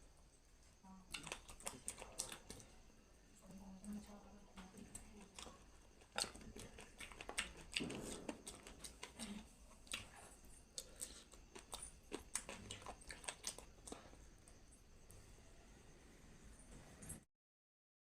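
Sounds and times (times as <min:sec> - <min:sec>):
chewing mouth sounds: 0:01.1 - 0:02.8, 0:04.6 - 0:14.6.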